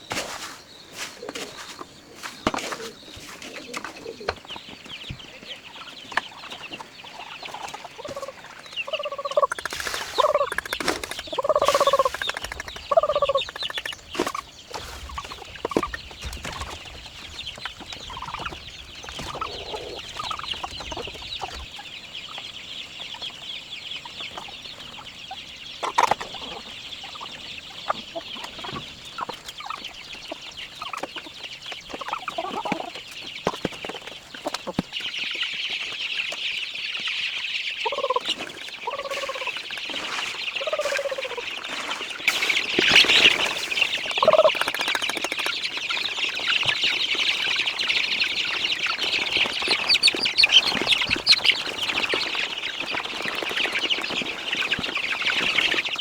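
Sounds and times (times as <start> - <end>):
chickens clucking: 0.0 - 56.0.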